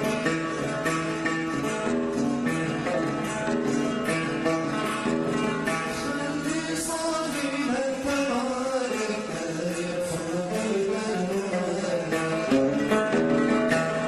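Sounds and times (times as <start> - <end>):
plucked string instrument melody: 0.0 - 14.0
person singing: 5.7 - 12.9.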